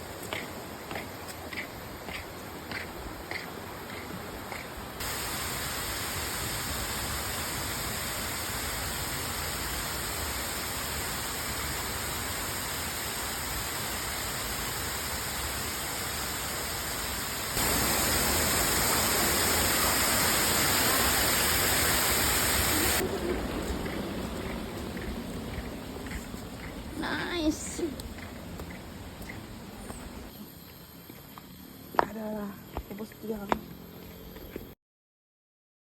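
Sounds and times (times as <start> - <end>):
waterfall roaring: 3.5 - 30.3.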